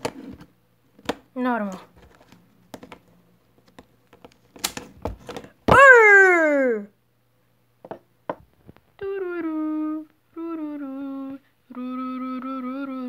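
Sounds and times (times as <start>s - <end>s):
person humming: 9.0s - 13.0s.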